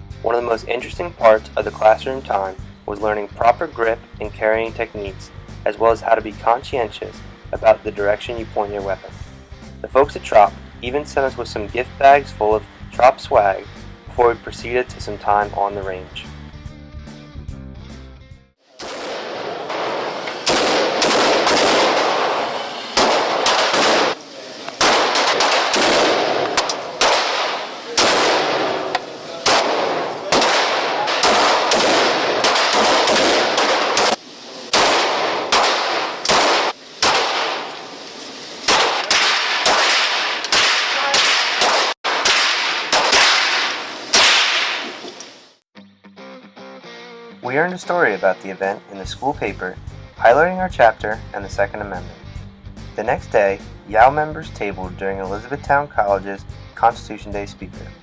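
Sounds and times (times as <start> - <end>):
echoing gunshots: 18.8 - 45.2.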